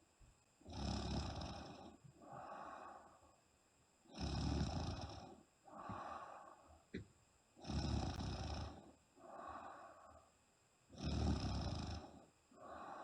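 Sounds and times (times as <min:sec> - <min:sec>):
woman snoring: 0:00.6 - 0:03.1, 0:04.1 - 0:06.6, 0:07.6 - 0:10.2, 0:10.9 - 0:13.0
soft high breath: 0:01.9 - 0:03.4, 0:05.6 - 0:06.9, 0:09.2 - 0:10.4, 0:12.5 - 0:13.0.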